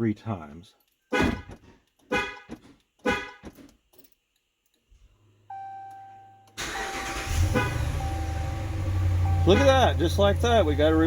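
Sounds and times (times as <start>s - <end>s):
car horn chirp: 1.1s - 1.5s, 2.1s - 3.5s, 6.8s - 8.6s, 9.2s - 10.2s
truck engine cranking and running: 6.6s - 11.0s.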